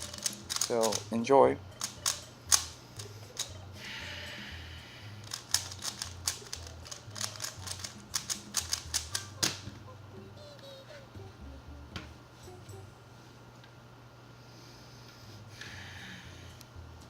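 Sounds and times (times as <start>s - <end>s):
puzzle cube clicking: 0.0s - 1.1s, 1.8s - 3.6s, 5.2s - 9.6s.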